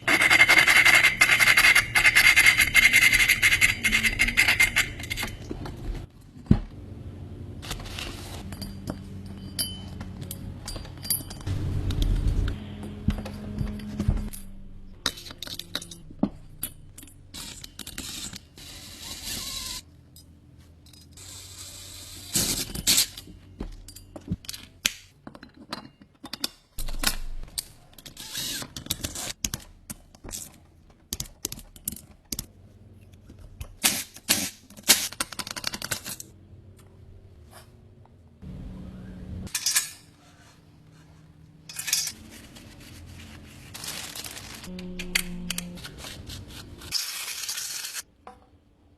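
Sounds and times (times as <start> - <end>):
metal tools clinking and scraping: 7.7 - 11.5, 13.1 - 18.4, 39.5 - 40.4, 41.7 - 42.7.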